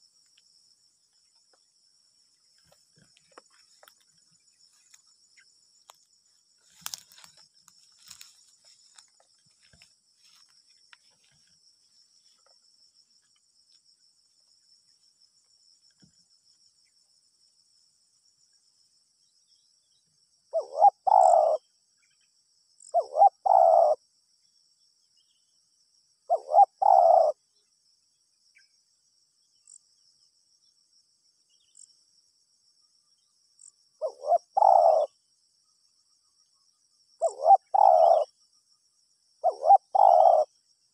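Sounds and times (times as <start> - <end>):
high insect drone: 0.0 - 40.9
dove cooing: 20.5 - 21.6, 22.9 - 24.0, 26.3 - 27.4, 34.0 - 35.1, 37.2 - 38.3, 39.4 - 40.5.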